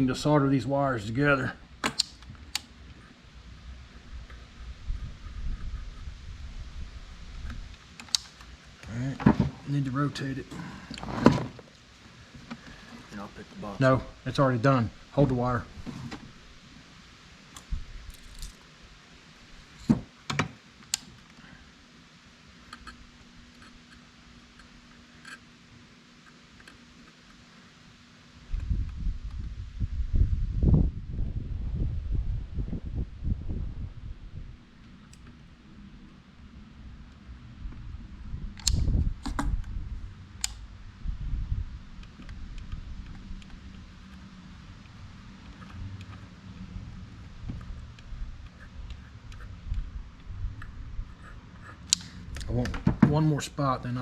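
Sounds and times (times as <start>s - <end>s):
faint steady hum: 0.0s - 54.0s
clicks and knocks of tools: 1.8s - 2.7s
low rumble: 28.4s - 52.8s.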